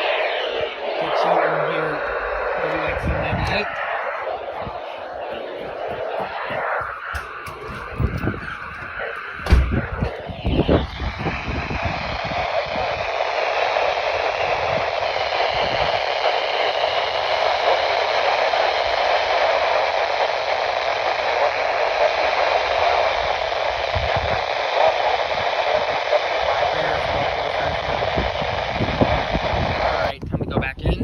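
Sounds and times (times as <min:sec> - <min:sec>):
faint wavering whistle: 0:00.0 - 0:12.6
radio static hiss: 0:00.0 - 0:31.0.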